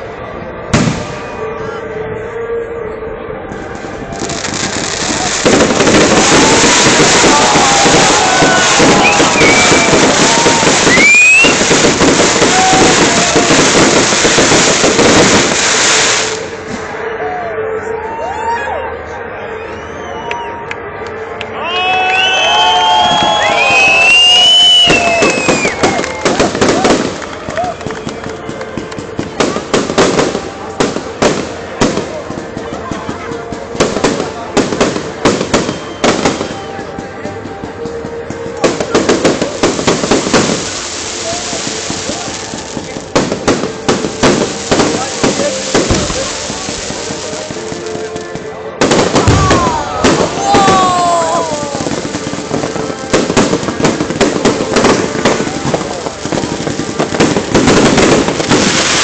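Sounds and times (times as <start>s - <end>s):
fireworks crackling: 3.5s - 17.2s, 22.2s - 59.0s
firework rising whistle: 3.5s - 17.3s, 21.6s - 27.1s.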